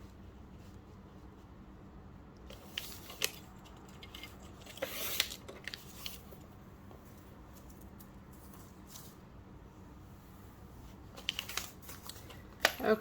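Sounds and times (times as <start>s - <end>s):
stiff paper rustling: 2.5s - 6.4s.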